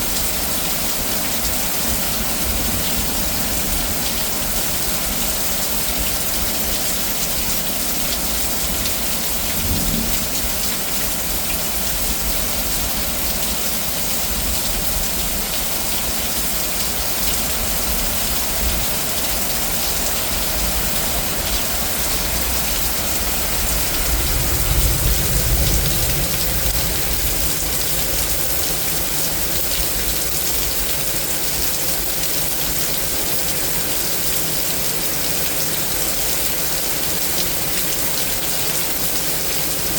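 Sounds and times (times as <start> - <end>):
heavy rain pouring: 0.0 - 39.9
low thunder rumble: 9.3 - 12.3, 22.3 - 28.7.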